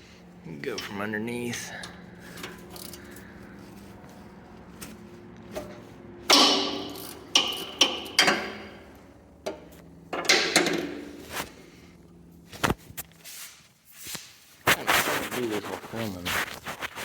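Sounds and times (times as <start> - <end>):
metal tool clanking on steel: 5.6 - 11.2.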